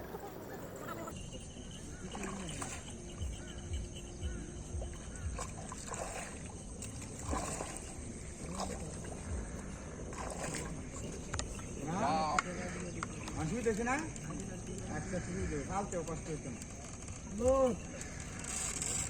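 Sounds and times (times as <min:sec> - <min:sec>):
water sloshing in river: 0:00.0 - 0:19.0
dull low thumps: 0:03.2 - 0:06.0, 0:08.8 - 0:10.3.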